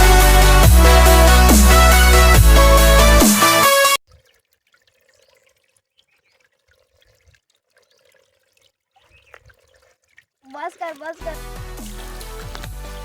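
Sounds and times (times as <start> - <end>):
electronic music with heavy beat: 0.0 - 4.0, 11.2 - 13.0
water dripping and splashing: 4.0 - 13.0.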